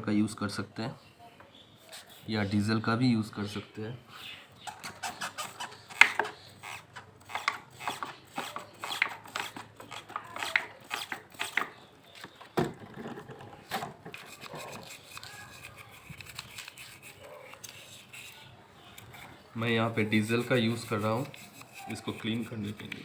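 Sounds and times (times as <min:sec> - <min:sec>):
scrubbing strokes on metal: 0:01.8 - 0:02.4, 0:04.1 - 0:11.8, 0:14.0 - 0:23.0.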